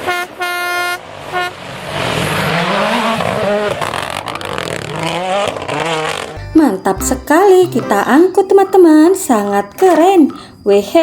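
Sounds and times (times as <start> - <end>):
race car engine revving: 1.8 - 6.4.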